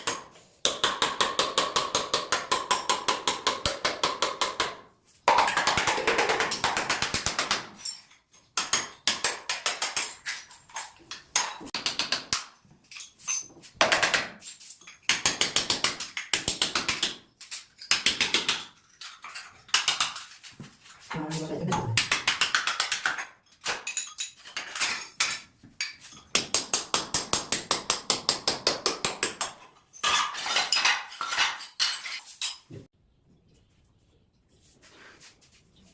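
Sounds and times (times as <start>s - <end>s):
hand tool clicking on tile: 21.7s - 23.8s.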